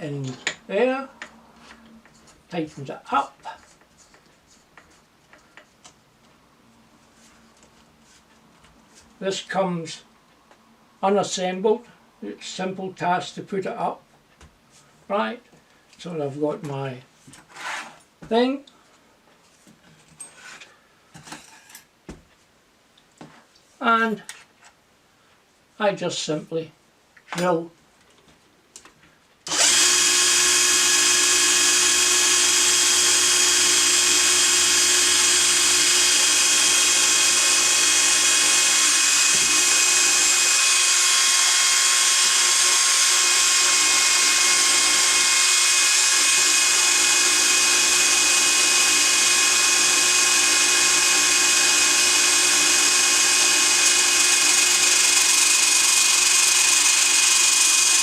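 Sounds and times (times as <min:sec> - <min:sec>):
electric drill running: 0:29.5 - 0:58.0.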